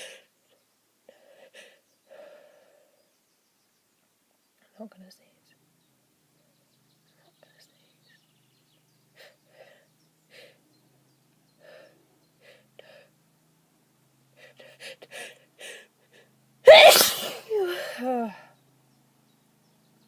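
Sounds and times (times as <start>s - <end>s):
person gasping breaths: 1.1s - 3.0s, 14.4s - 16.3s.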